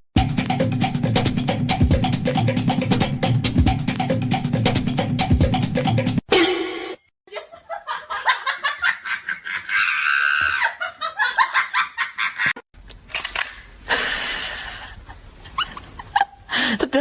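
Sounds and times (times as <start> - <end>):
person laughing hard: 7.3 - 12.5.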